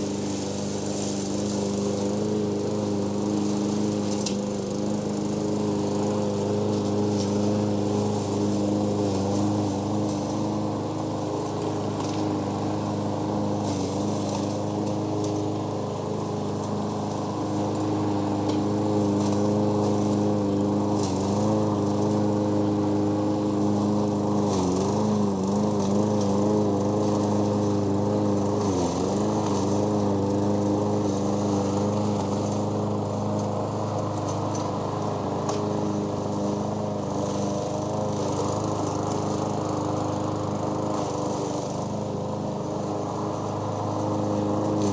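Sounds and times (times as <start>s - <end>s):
lawnmower engine running: 0.0s - 44.9s.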